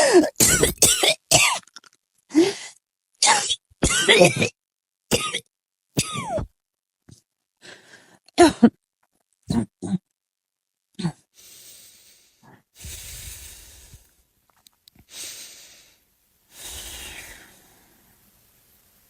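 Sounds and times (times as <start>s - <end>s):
person coughing: 0.0s - 1.7s, 3.2s - 4.6s, 8.4s - 8.8s
heavy noisy breaths: 11.4s - 14.2s.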